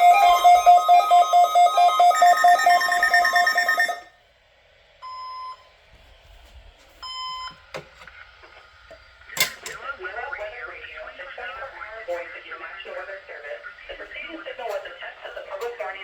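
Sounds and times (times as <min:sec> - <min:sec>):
fast electronic beeping: 0:00.0 - 0:04.1.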